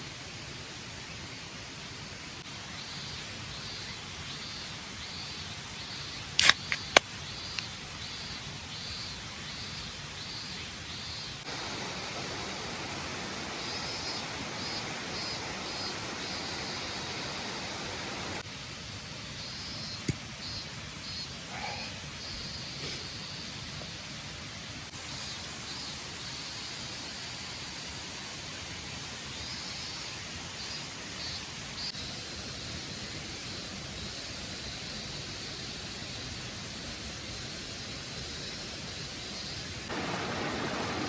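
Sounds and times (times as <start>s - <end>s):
steady outdoor hiss: 0.0s - 41.0s
sharp clicks: 6.4s - 7.6s.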